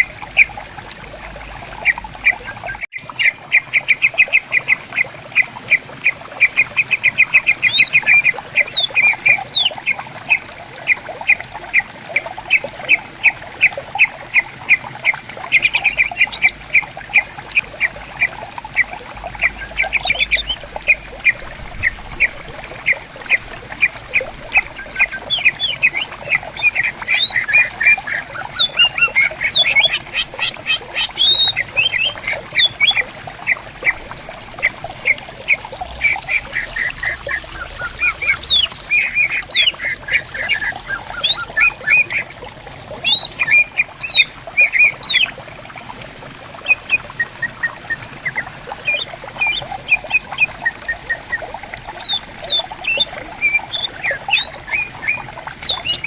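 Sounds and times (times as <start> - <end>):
stream gurgling: 0.0 - 56.0
birds chirping and whistling: 7.0 - 10.0, 15.5 - 16.6, 18.8 - 22.3, 24.5 - 34.0, 35.9 - 42.2, 43.0 - 45.3, 52.0 - 56.0.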